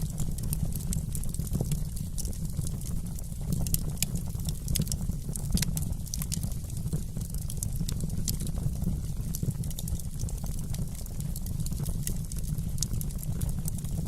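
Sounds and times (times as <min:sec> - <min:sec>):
logs crackling and popping: 0:00.0 - 0:14.0
low rumble of flames: 0:00.0 - 0:14.0.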